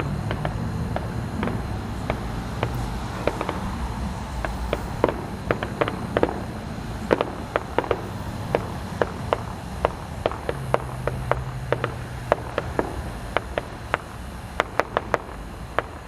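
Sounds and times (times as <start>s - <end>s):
fireworks popping and cracking: 0.0s - 16.0s.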